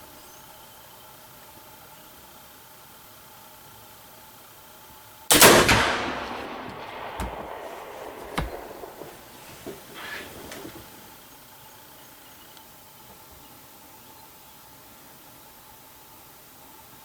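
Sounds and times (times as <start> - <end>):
rifle shot: 5.3 - 10.9
faint sharp knocks: 6.2 - 10.9.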